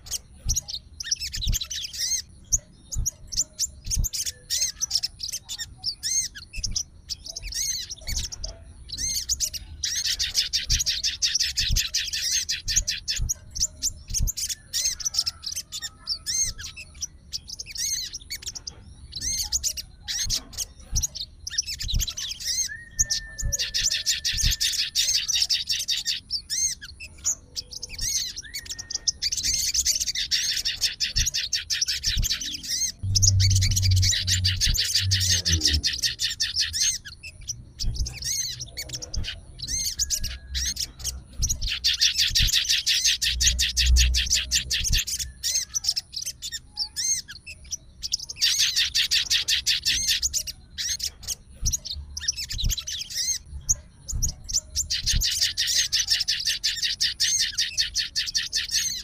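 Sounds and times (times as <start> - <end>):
songbird chattering warble: 0.0 - 59.0
low rumble: 32.2 - 36.3.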